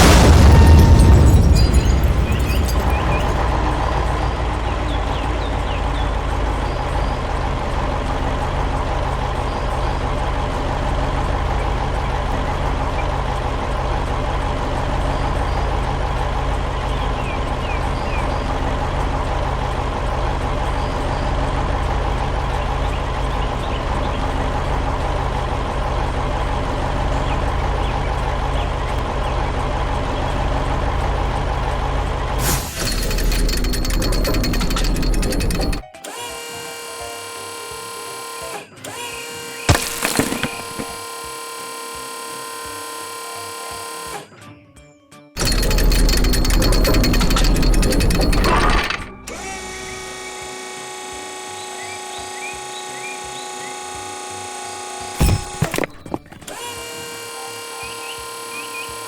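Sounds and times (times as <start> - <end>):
loud boom: 0.0 - 4.4
heavy truck engine running: 0.0 - 35.8, 45.4 - 50.3.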